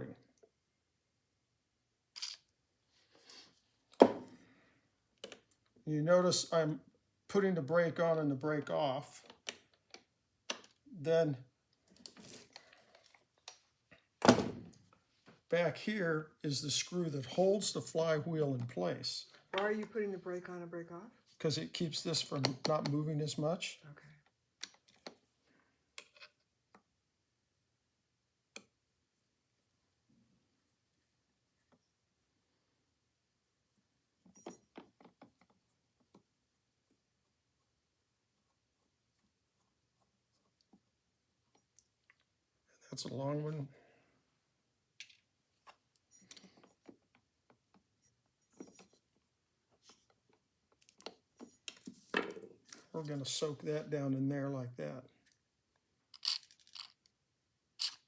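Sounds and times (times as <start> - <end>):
small clicks and taps of tools: 5.2 - 5.7, 9.2 - 10.8, 24.2 - 25.2, 26.0 - 26.9, 45.0 - 47.9, 49.8 - 52.8
tools clicking on metal parts: 56.2 - 57.0, 57.8 - 58.0.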